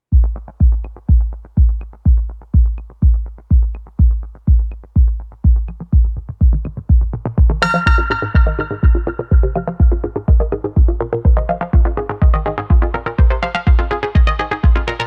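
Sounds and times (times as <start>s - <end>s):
electronic dance music: 7.6s - 15.0s.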